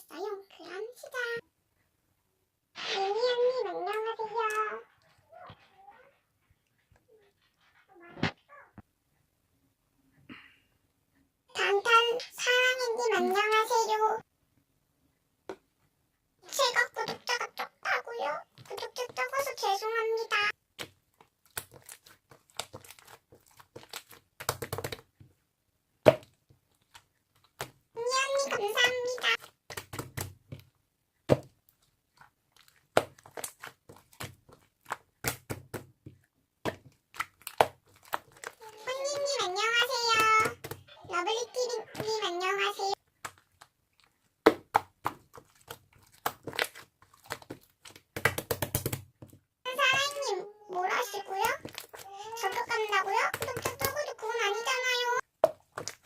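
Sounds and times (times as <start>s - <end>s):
slime crackling and popping: 20.7s - 25.0s, 31.4s - 35.9s, 36.6s - 40.9s, 41.9s - 49.2s, 55.3s - 56.0s.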